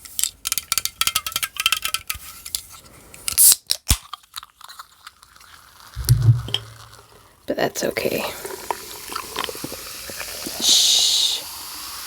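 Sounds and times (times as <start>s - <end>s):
soda fizzing: 5.8s - 12.0s.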